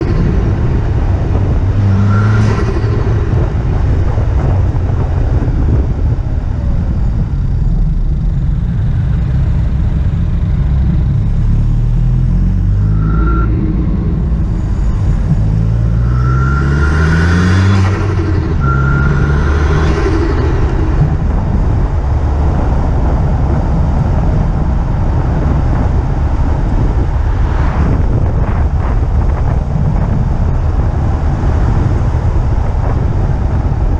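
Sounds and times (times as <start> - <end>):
car engine accelerating: 0.0 - 33.9
road noise: 0.0 - 33.9
turbo whooshes: 26.8 - 29.3.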